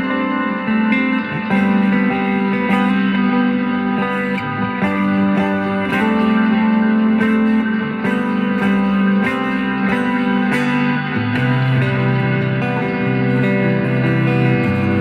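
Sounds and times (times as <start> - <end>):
electric guitar chords through amp: 0.0 - 15.0.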